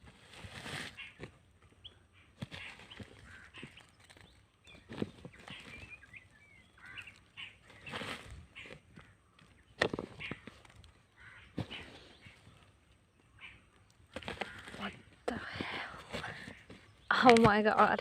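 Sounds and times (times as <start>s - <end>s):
rustling and scraping: 0.0s - 18.0s
bird chirps: 1.8s - 13.9s.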